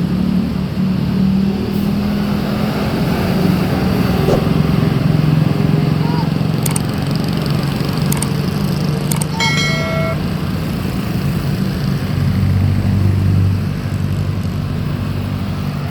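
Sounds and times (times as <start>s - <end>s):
car horn toot: 9.4s - 10.2s.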